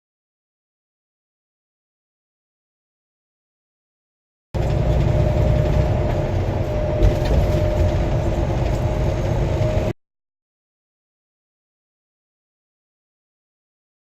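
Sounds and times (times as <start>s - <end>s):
truck engine and road rumble: 4.6s - 10.0s.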